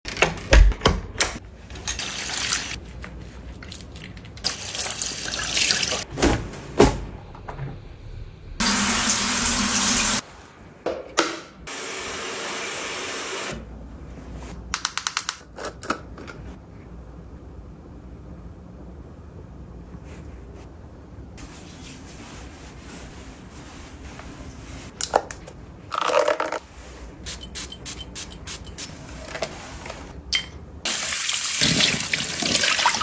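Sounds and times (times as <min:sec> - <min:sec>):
sink tap running: 0:08.6 - 0:10.2.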